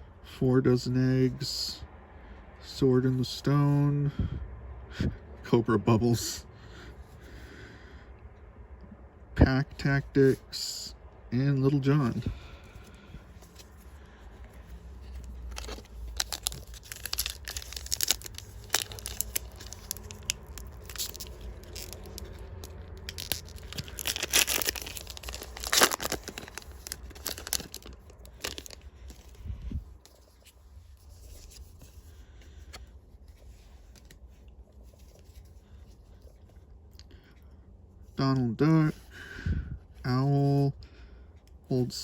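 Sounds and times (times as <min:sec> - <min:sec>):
foil wrapper tearing and crinkling: 0:15.2 - 0:28.8.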